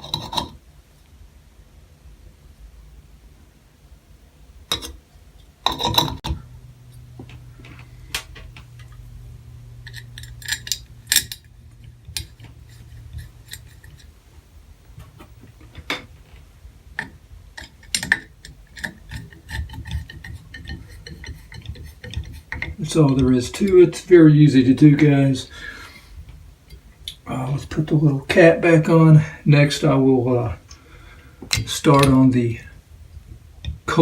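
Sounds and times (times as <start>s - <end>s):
small metal clicks and knocks: 0.0s - 0.6s, 4.7s - 5.0s, 5.6s - 6.4s, 9.8s - 14.1s, 17.0s - 23.8s.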